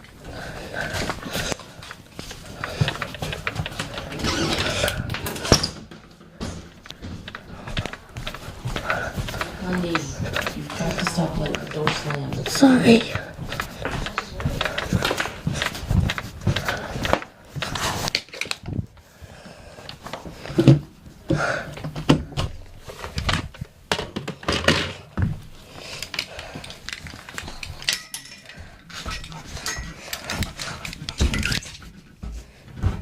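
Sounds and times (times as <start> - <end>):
knocks clicks and clattering: 20.4 - 25.4, 26.0 - 31.9.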